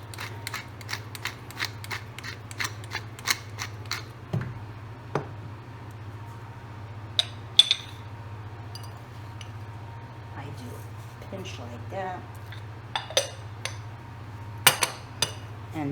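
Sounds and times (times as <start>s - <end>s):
pepper mill grinding clicks: 0.0s - 4.1s.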